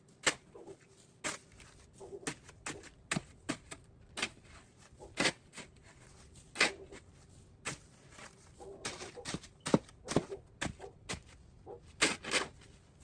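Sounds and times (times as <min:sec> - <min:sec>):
crunches and scrapes in snow: 0:00.0 - 0:13.0.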